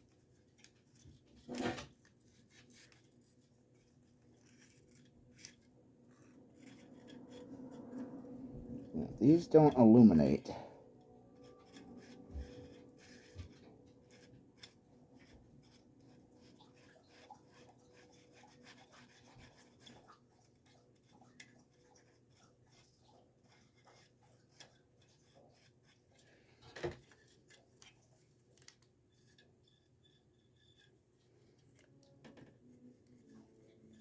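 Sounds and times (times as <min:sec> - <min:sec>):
marker scratching on metal: 0:00.1 - 0:10.5, 0:11.3 - 0:26.2, 0:32.9 - 0:34.0.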